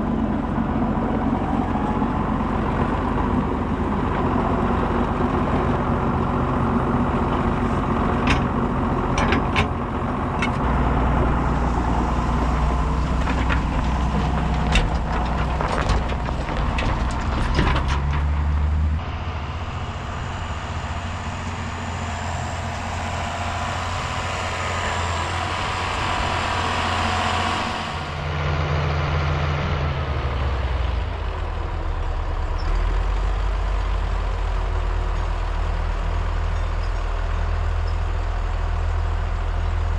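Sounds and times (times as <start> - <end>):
heavy machinery engines humming: 0.0 - 39.9
metal clanks and knocks: 8.2 - 9.8, 12.2 - 18.8.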